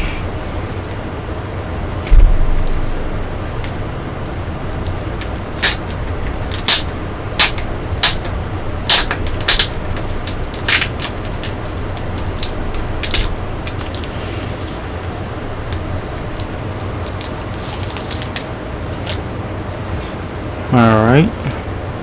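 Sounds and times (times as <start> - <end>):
steady low hum: 0.0 - 22.0
packaging crackling and ripping: 1.9 - 19.2.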